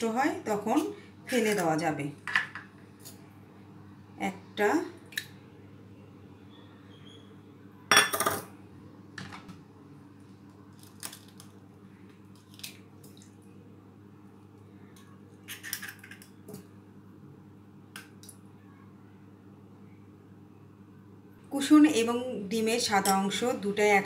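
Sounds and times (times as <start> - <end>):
eggs cracking into a bowl: 10.7 - 11.6, 12.2 - 13.3, 15.0 - 16.4.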